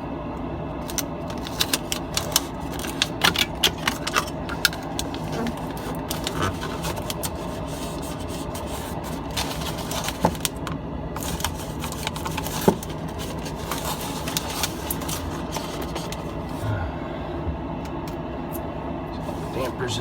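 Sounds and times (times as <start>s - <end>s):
steady low hum: 0.0s - 20.0s
plastic clicks and rustles: 0.8s - 16.4s.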